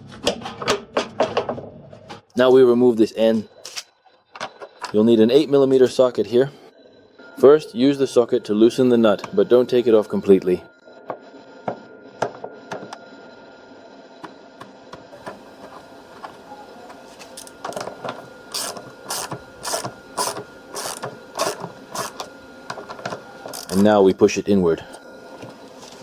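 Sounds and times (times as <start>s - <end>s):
ratchet wrench clicking: 18.5s - 22.3s.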